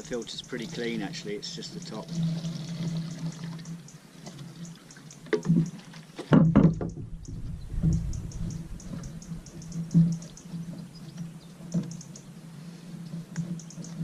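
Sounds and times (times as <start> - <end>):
fuel sloshing in plastic container: 0.6 - 3.6
knocks: 6.2 - 7.1.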